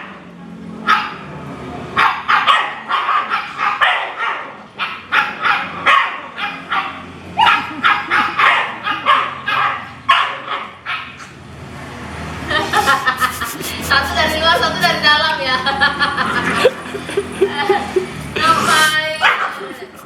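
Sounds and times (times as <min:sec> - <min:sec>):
dogs barking sharply: 0:02.0 - 0:11.3, 0:19.2 - 0:20.0.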